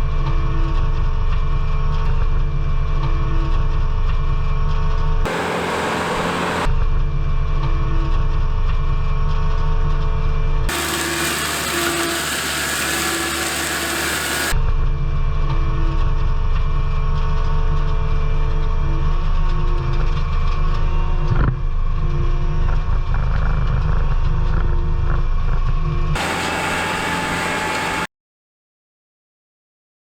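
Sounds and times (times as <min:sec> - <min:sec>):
bright hissing wash: 0:05.3 - 0:06.7
skid steer loader engine: 0:05.3 - 0:06.7, 0:10.7 - 0:14.6, 0:26.2 - 0:28.1
engine knock: 0:26.2 - 0:28.1.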